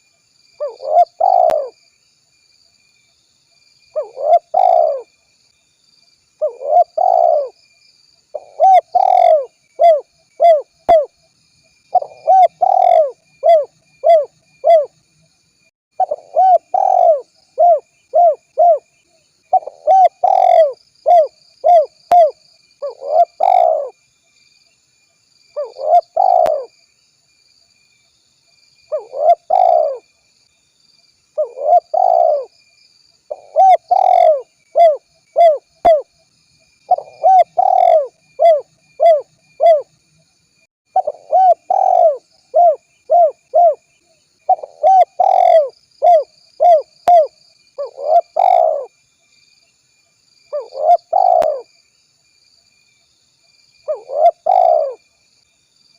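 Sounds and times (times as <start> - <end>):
dove cooing: 0.6 - 1.8, 4.0 - 5.1, 6.4 - 7.6, 8.3 - 11.1, 11.9 - 14.9, 16.0 - 18.9, 19.5 - 24.0, 25.6 - 26.7, 28.9 - 30.0, 31.4 - 32.5, 33.3 - 36.1, 36.9 - 39.9, 41.0 - 43.8, 44.5 - 48.9, 50.5 - 51.7, 53.9 - 55.0.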